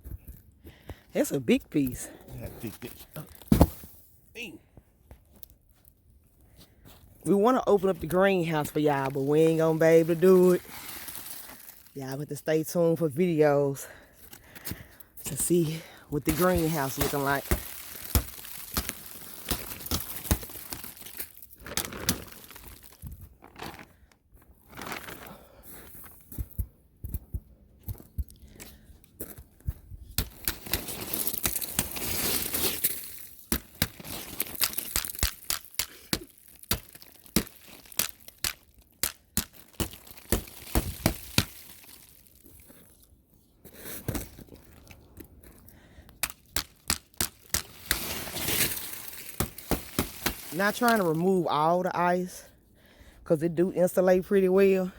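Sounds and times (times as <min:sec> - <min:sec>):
ice crunching and cracking: 0:07.2 - 0:12.2, 0:14.3 - 0:26.1, 0:30.2 - 0:51.6.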